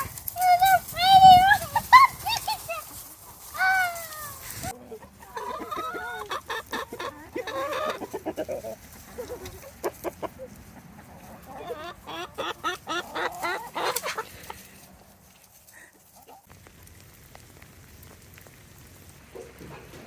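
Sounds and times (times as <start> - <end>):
hens clucking: 0.0 - 16.6.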